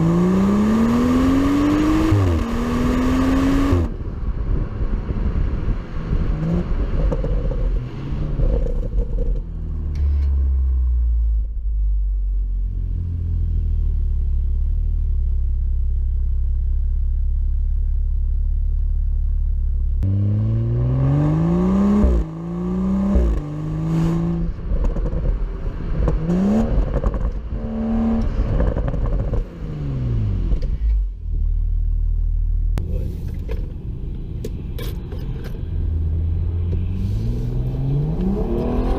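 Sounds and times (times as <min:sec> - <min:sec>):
car engine revving through exhaust: 0:00.0 - 0:04.2, 0:18.1 - 0:32.8, 0:35.8 - 0:38.9.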